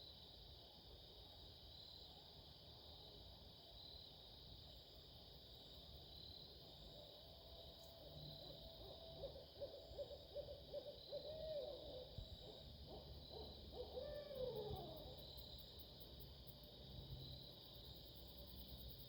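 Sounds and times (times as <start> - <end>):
owl hooting: 8.8 - 15.2.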